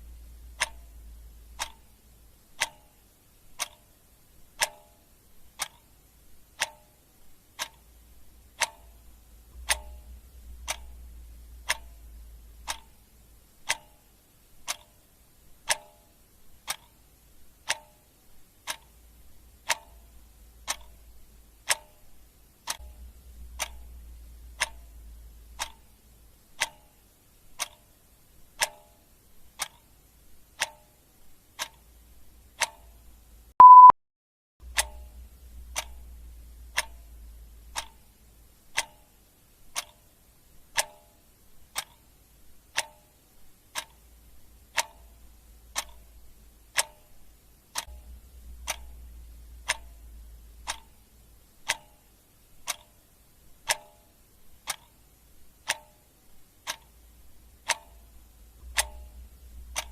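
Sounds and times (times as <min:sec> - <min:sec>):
clock ticking: 0:00.0 - 0:33.9, 0:34.6 - 0:59.9
faint low hum: 0:00.0 - 0:33.9, 0:34.6 - 0:59.9
short high-pitched beep: 0:33.6 - 0:34.0.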